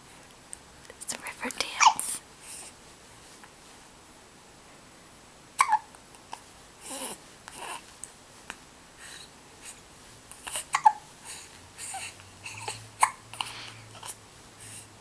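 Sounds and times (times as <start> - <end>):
breathing: 2.4 - 2.8, 9.0 - 9.8, 10.4 - 15.0
person hiccuping: 5.6 - 5.9, 10.7 - 11.0.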